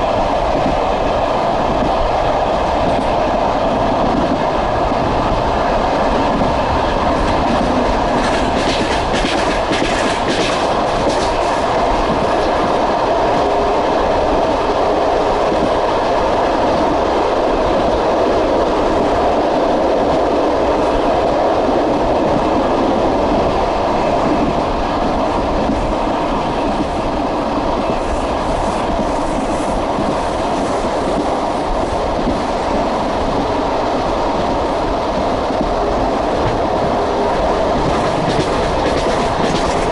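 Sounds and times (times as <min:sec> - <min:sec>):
train carriage rumble: 0:00.0 - 0:39.9
wheels clacking over rail joints: 0:07.0 - 0:12.6, 0:35.6 - 0:39.9.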